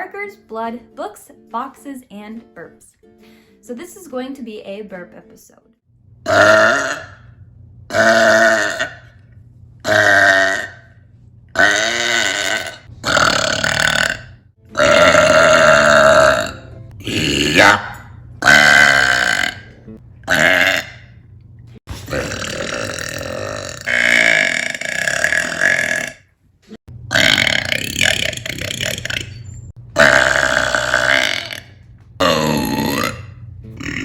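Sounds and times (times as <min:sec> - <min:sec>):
woman burping loudly: 0:06.3 - 0:07.2, 0:07.9 - 0:09.2, 0:09.8 - 0:10.9, 0:11.6 - 0:17.8, 0:18.4 - 0:21.1, 0:22.1 - 0:26.2, 0:27.1 - 0:29.4, 0:30.0 - 0:34.0.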